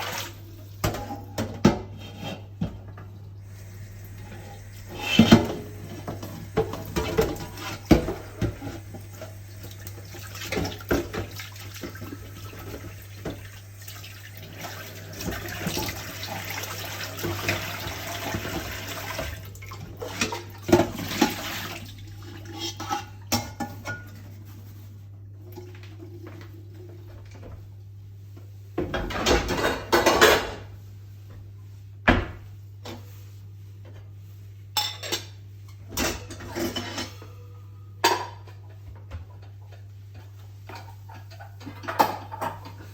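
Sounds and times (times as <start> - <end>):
tap water running: 0.0 - 23.0, 40.2 - 42.9.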